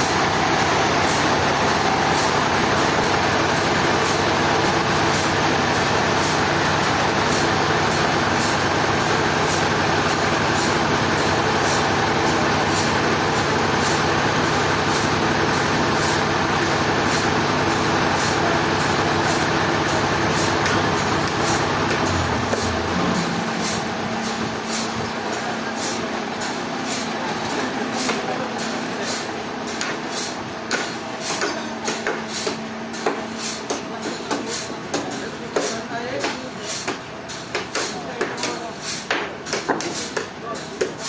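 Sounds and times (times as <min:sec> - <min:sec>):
engine drone: 0:00.0 - 0:30.5
dense mechanical noise: 0:00.0 - 0:41.0.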